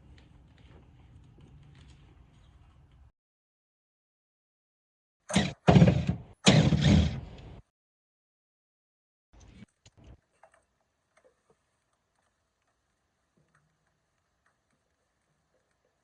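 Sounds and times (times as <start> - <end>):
faint clicks and taps: 0.0 - 3.1, 9.4 - 16.0.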